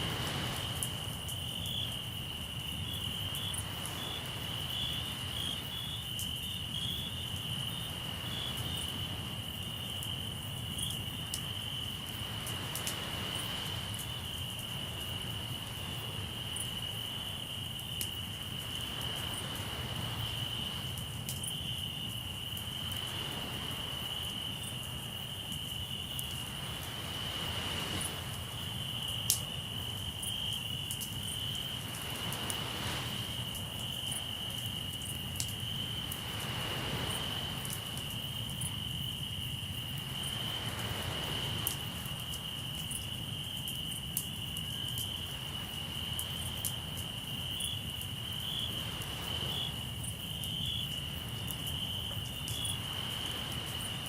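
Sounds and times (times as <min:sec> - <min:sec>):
waves washing in: 0:00.0 - 0:01.3, 0:03.1 - 0:05.7, 0:07.9 - 0:09.5, 0:12.1 - 0:16.7, 0:18.4 - 0:21.0, 0:22.7 - 0:24.7, 0:26.2 - 0:29.8, 0:31.5 - 0:35.0, 0:35.8 - 0:38.7, 0:40.0 - 0:42.5, 0:48.7 - 0:50.1, 0:51.1 - 0:54.0
crickets trilling: 0:00.0 - 0:54.0.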